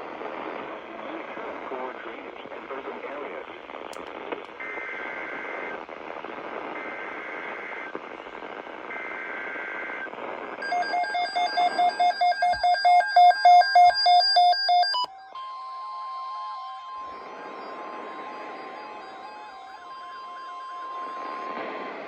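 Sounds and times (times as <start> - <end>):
radio static: 0.0 - 12.1, 20.8 - 22.0
rapid loud alarm beeps: 10.6 - 15.5
warbling data tones: 10.6 - 22.0.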